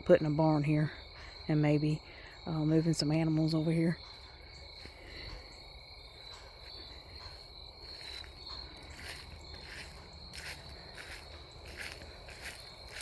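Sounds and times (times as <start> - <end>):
crickets trilling: 0.0 - 13.0
soft footsteps on ground cover: 4.6 - 13.0.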